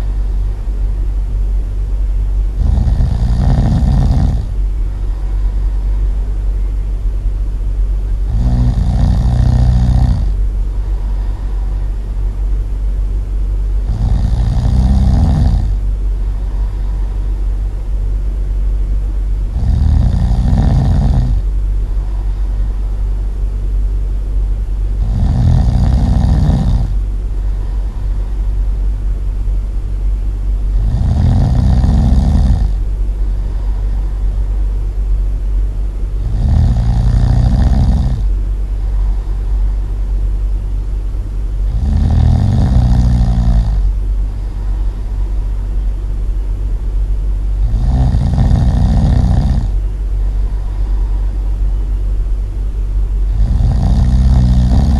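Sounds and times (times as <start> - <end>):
steady low hum: 0.0 - 54.9
loud snoring: 2.6 - 5.6, 8.2 - 11.9, 13.8 - 17.3, 19.5 - 22.7, 25.0 - 28.3, 30.7 - 32.8, 36.2 - 39.7, 41.6 - 45.2, 47.6 - 49.8, 53.3 - 54.9.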